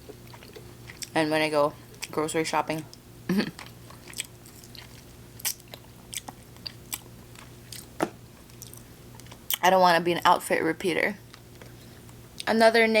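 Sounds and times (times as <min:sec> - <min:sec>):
person chewing: 0:00.0 - 0:01.1, 0:03.3 - 0:09.6.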